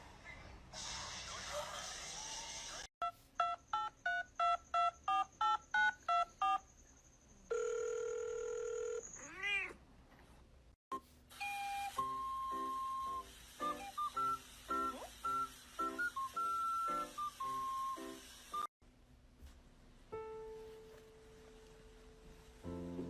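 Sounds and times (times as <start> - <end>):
cat meowing: 9.2 - 9.8.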